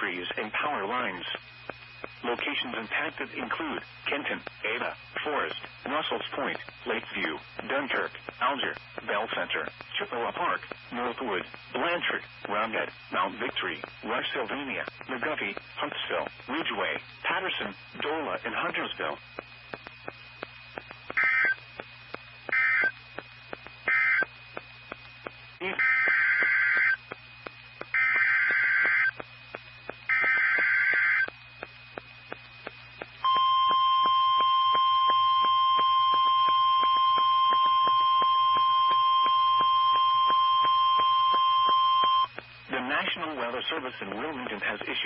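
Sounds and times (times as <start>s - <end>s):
low receiver hum: 0.0s - 45.0s
faint regular clicks: 1.6s - 2.2s, 19.3s - 42.6s
digital data bursts: 2.0s - 45.0s
steady warning alarm tone: 18.1s - 42.4s.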